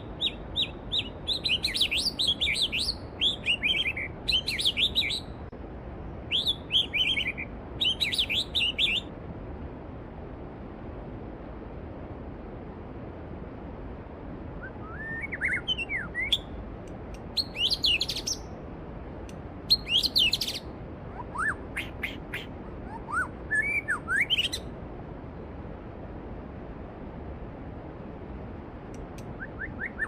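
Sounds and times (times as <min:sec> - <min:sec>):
songbird singing: 0:00.0 - 0:05.5, 0:06.3 - 0:09.1, 0:14.6 - 0:18.6, 0:19.6 - 0:24.7, 0:29.0 - 0:30.0.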